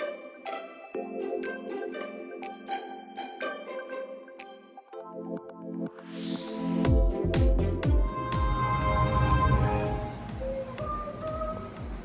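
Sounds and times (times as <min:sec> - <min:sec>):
soft synthesizer notes: 0:00.0 - 0:12.0
electronic beat: 0:06.4 - 0:08.8, 0:09.9 - 0:12.0.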